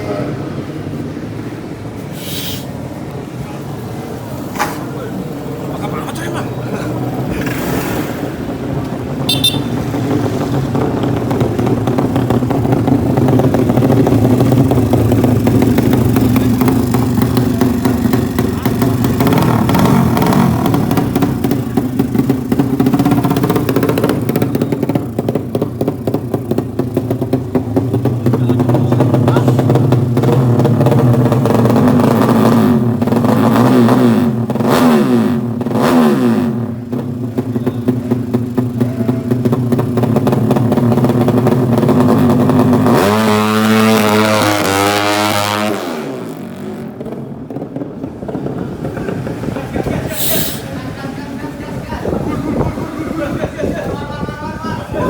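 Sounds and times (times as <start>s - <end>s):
motorcycle engine revving high: 7.0s - 51.0s.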